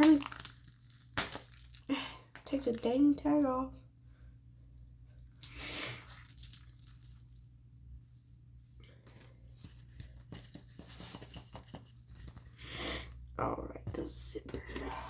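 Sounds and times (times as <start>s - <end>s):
plastic crinkling and crackling: 0.0s - 2.0s.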